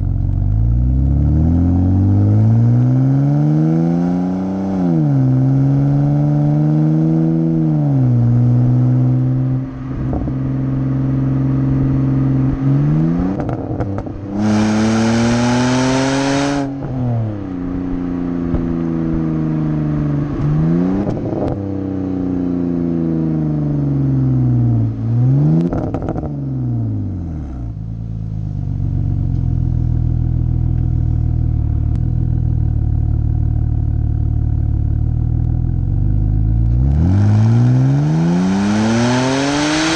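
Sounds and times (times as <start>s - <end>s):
exhaust crackles and pops: 0.0s - 0.8s, 18.4s - 19.2s, 29.0s - 37.0s
car exhaust revving: 0.0s - 39.9s.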